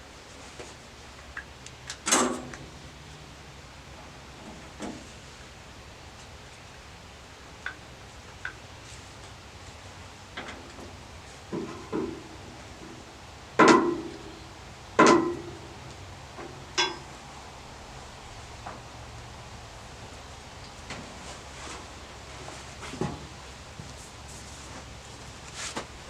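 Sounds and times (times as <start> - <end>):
knocks and clunks: 13.6 - 14.3, 15.0 - 15.6.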